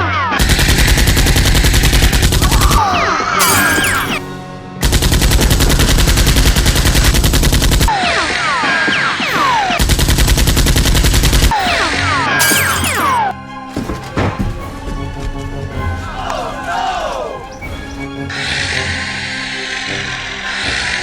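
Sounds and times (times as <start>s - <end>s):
background music: 0.0s - 10.1s, 11.4s - 21.0s
automatic gunfire sound effects: 9.3s - 13.3s.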